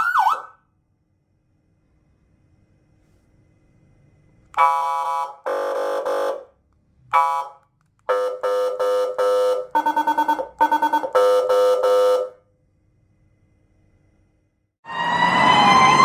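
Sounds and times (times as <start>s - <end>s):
dual-tone electronic siren blasts: 0.0s - 0.6s, 4.6s - 6.4s, 7.1s - 12.3s, 14.8s - 16.0s.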